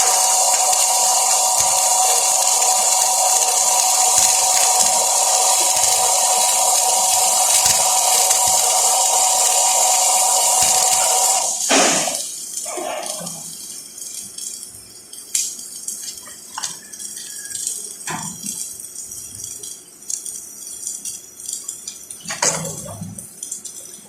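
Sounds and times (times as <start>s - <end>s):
faint steady hiss: 0.0s - 22.3s.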